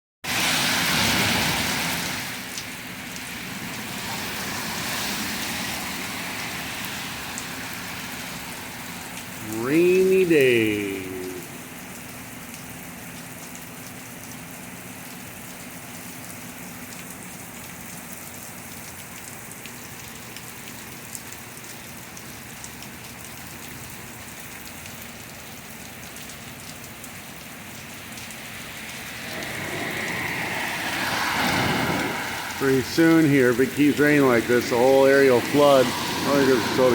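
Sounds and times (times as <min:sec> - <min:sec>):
heavy rain on hard ground: 0:00.2 - 0:36.9
splashing rush: 0:00.3 - 0:02.5, 0:28.4 - 0:36.9.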